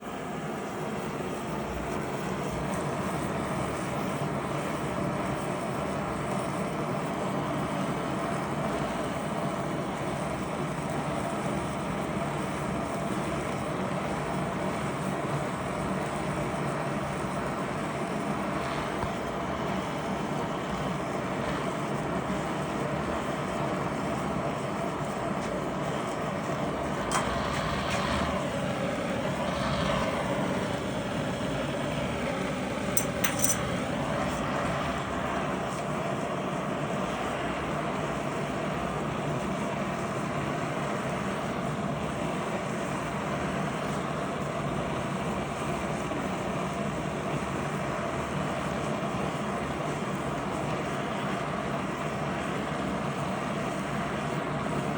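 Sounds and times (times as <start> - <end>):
mechanical drone humming: 25.0 - 35.7
sharp click: 33.0 - 33.8.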